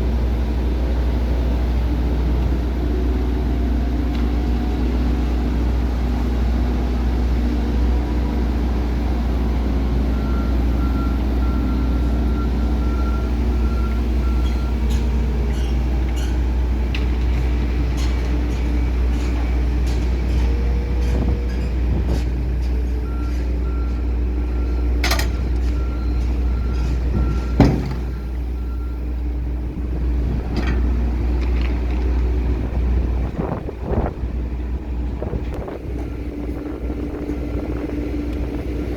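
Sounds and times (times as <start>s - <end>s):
low engine rumble: 0.0s - 38.9s
truck reversing alarm beeping: 8.5s - 16.5s, 22.8s - 30.0s, 35.6s - 38.9s
metal clanks: 25.0s - 28.3s.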